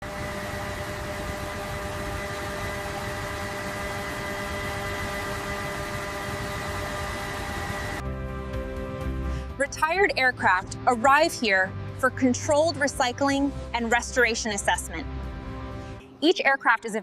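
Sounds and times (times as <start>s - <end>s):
aircraft engine running: 0.0s - 16.0s.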